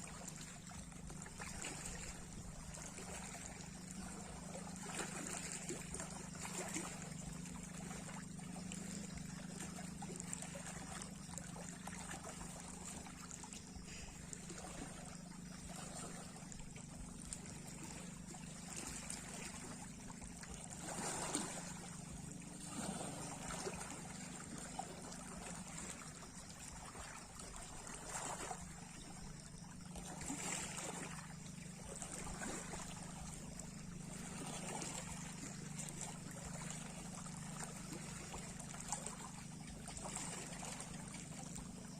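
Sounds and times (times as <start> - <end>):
steady low hum: 0.0 - 41.9
small waves washing on shore: 10.0 - 26.0.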